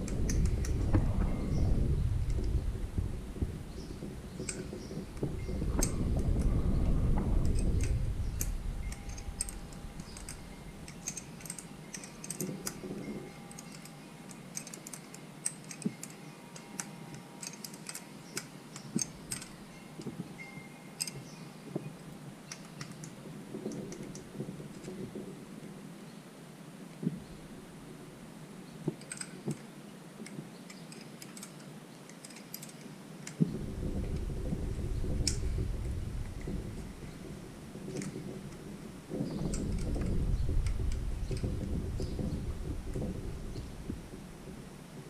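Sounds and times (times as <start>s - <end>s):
low rumble: 0.0s - 12.0s, 33.4s - 45.0s
metallic clicks of hand tools: 7.4s - 21.4s, 28.9s - 33.4s.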